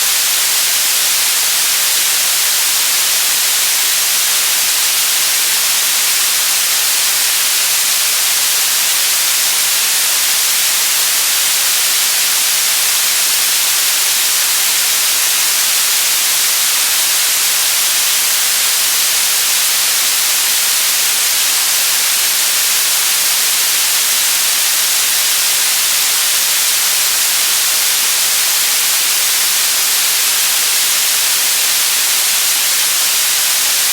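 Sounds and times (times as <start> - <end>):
loud static hiss: 0.0 - 33.9.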